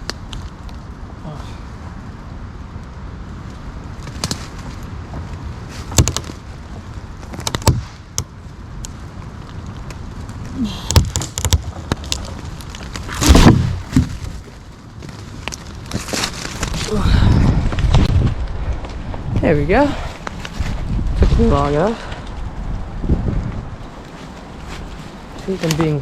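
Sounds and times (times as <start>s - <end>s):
axe chopping wood: 5.9s - 6.3s, 10.8s - 11.6s, 13.1s - 14.4s.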